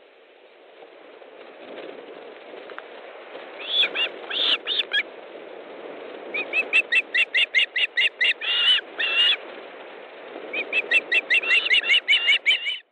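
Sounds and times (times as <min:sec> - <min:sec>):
steady low hiss: 0:00.0 - 0:12.1
osprey whistled calls: 0:03.6 - 0:05.0, 0:06.3 - 0:09.4, 0:10.5 - 0:12.9.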